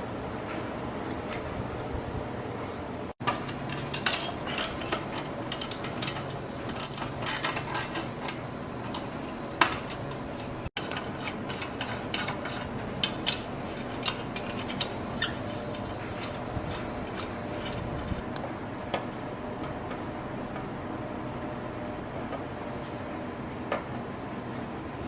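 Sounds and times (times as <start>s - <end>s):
tools and metal parts clicking: 3.2s - 10.0s, 13.0s - 17.8s.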